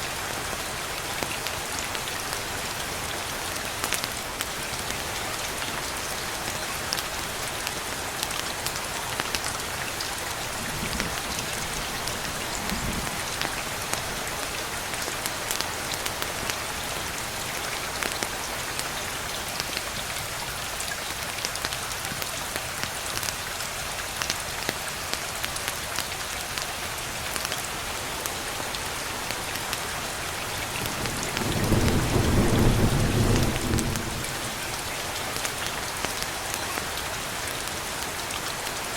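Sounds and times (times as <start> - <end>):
steady rain falling: 0.0 - 38.9
low rumble of thunder: 30.8 - 34.8.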